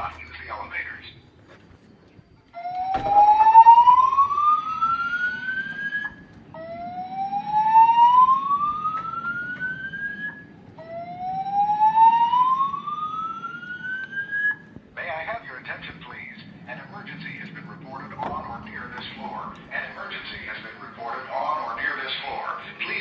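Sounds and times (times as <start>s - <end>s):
rising alarm tone sweep: 2.6s - 14.7s.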